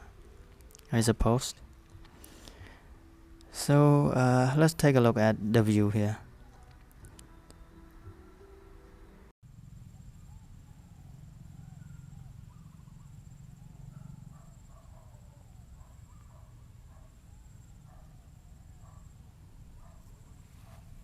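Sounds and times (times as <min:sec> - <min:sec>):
animal chirps: 0:10.2 - 0:16.6.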